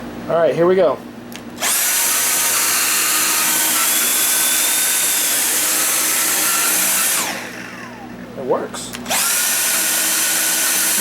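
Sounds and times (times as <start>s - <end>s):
vacuum cleaner whining: 1.6s - 8.4s, 9.0s - 11.0s.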